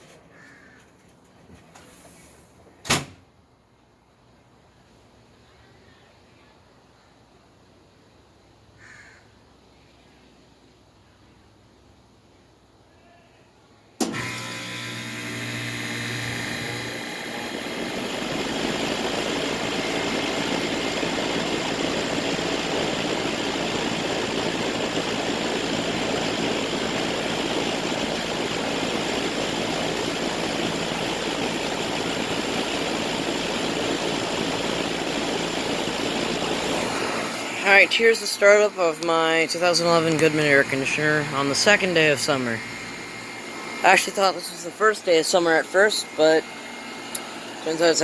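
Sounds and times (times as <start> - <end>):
air conditioner fan and compressor: 14.0 - 48.0.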